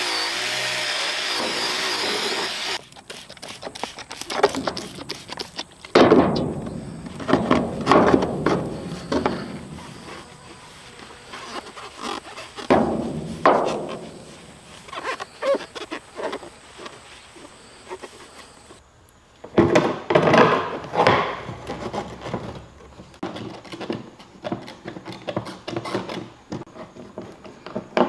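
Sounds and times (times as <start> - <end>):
power tool running: 0.0 - 5.3
parts knocking and clattering: 0.0 - 10.4, 11.6 - 15.9
heavy thumps: 4.4 - 16.5.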